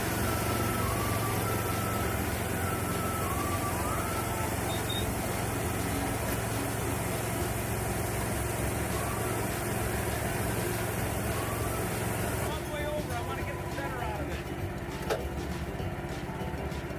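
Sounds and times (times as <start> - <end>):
engine humming steadily: 0.0 - 16.9.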